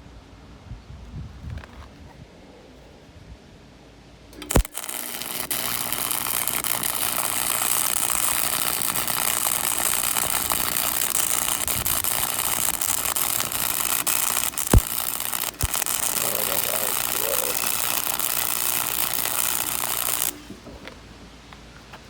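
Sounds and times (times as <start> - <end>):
sharp click: 4.4 - 16.2
welding arc crackling: 4.4 - 20.6.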